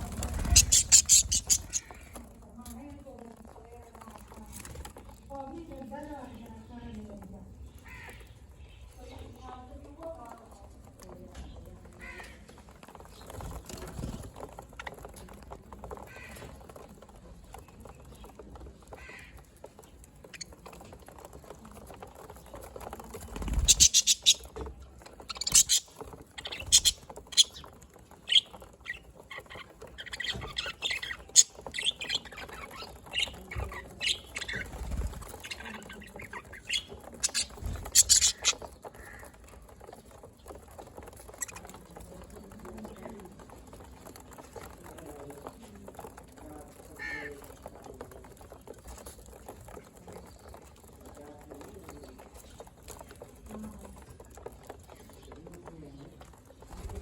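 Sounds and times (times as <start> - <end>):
budgerigars chirping and squawking: 0.0 - 2.3, 22.4 - 42.1.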